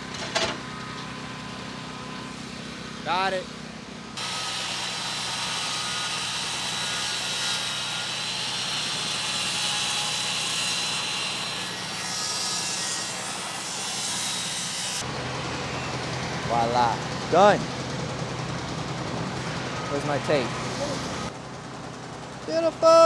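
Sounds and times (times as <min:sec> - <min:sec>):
power tool motor whine: 0:04.2 - 0:15.1.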